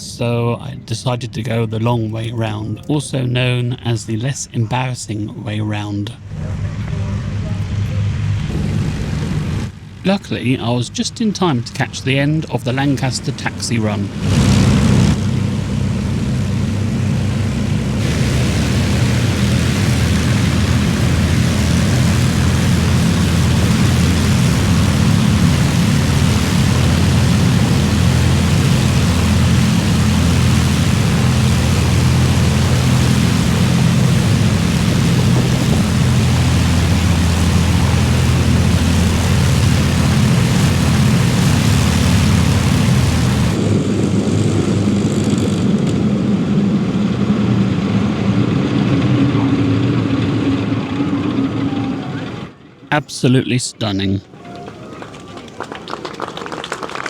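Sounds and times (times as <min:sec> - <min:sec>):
deep aircraft engine drone: 0:00.0 - 0:53.1
rush of propeller wash: 0:12.1 - 0:52.5.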